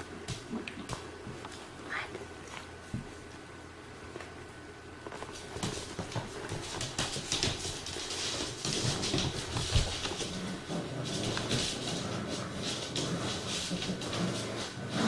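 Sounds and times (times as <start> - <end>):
paws clicking and pattering: 5.0 - 15.0
puppies scuffling: 5.0 - 15.0.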